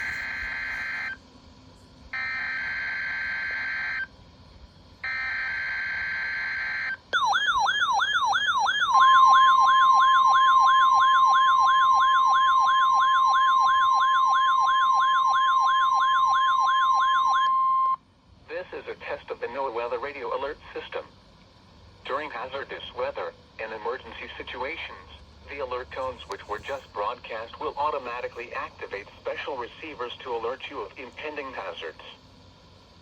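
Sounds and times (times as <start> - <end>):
warbling siren alarm: 0.0 - 1.2, 2.1 - 4.1, 5.0 - 18.0.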